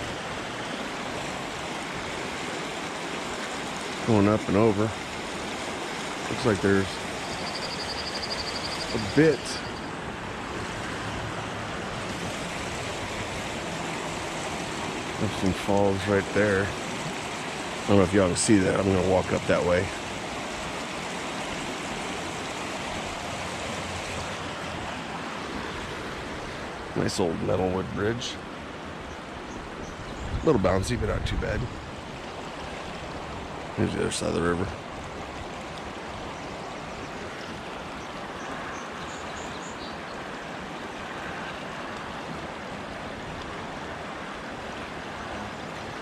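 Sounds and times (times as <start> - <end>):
river water rushing: 0.0 - 46.0
high chirps: 7.2 - 10.0.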